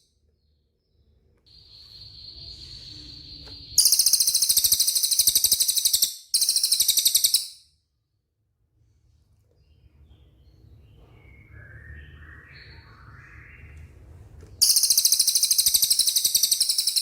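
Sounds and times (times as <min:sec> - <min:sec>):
songbird whistling and trilling: 0:01.5 - 0:07.6, 0:10.8 - 0:13.8, 0:14.6 - 0:17.0.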